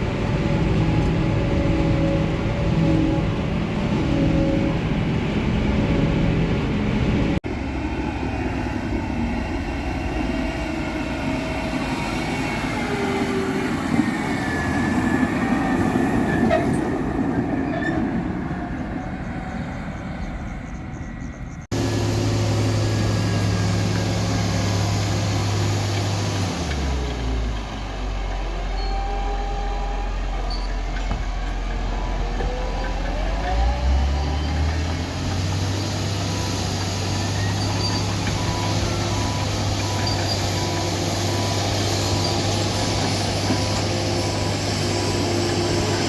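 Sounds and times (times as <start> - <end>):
diesel farm machinery running: 0.0 - 46.0
low engine drone: 20.2 - 46.0.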